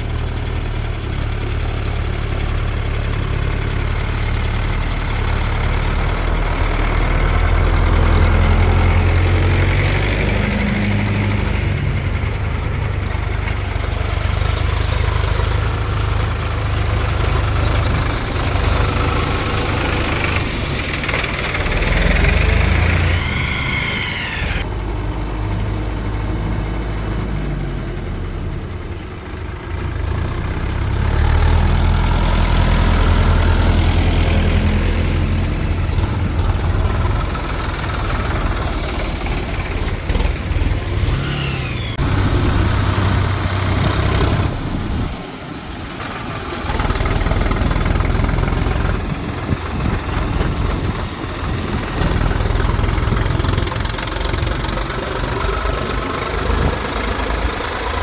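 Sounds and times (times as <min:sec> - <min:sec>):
diesel engine running: 0:00.0 - 0:58.0.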